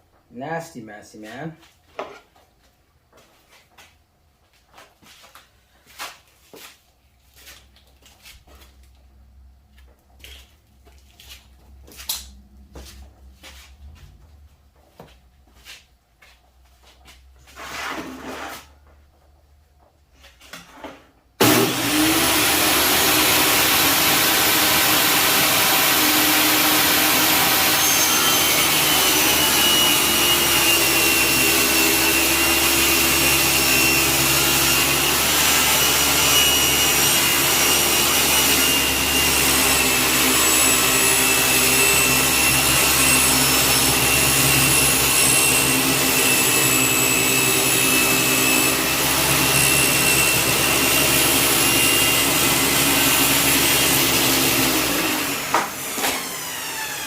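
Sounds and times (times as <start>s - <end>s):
table saw whining: 21.4s - 57.0s.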